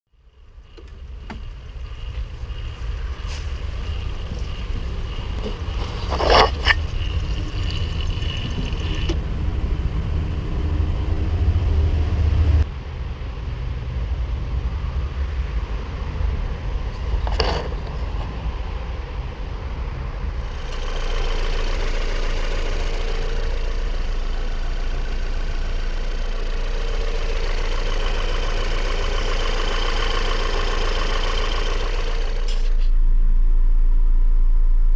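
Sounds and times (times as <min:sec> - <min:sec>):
car engine running: 0:00.1 - 0:12.6, 0:20.2 - 0:34.9.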